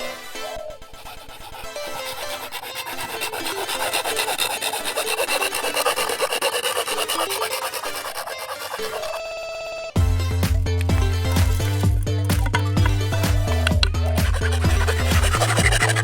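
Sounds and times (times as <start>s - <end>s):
hand tool rasping bamboo: 0.0s - 16.0s.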